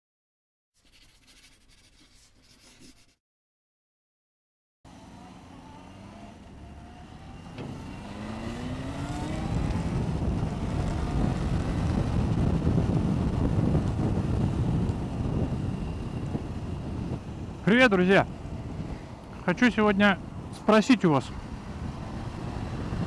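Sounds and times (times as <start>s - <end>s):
motorcycle engine accelerating: 4.9s - 17.6s, 21.3s - 23.0s
wind noise on microphone: 7.6s - 19.3s, 20.0s - 20.7s, 21.3s - 23.0s.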